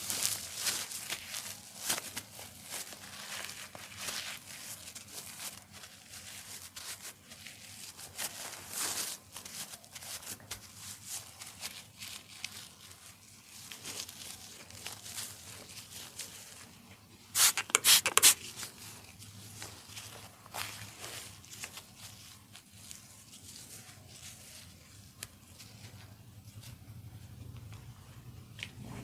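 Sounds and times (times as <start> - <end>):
hands rubbing on skin: 17.3 - 18.8.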